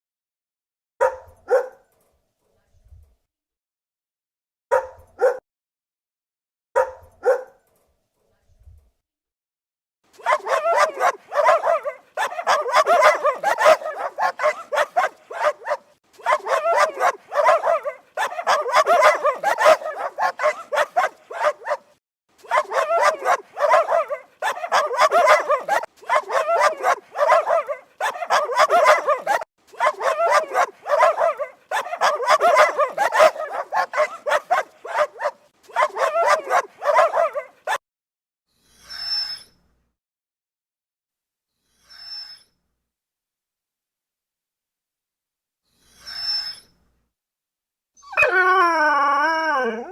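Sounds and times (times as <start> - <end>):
dog barking rapidly: 1.0 - 1.8, 4.7 - 5.4, 6.8 - 7.5, 10.2 - 37.8.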